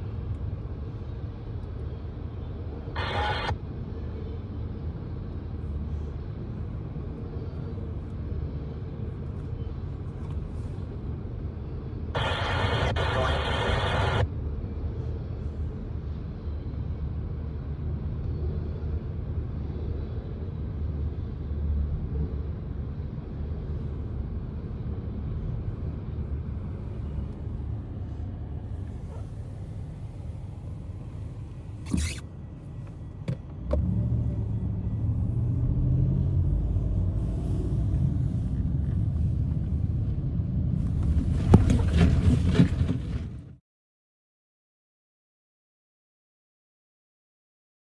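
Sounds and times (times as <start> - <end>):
low vehicle rumble: 14.2 - 43.6.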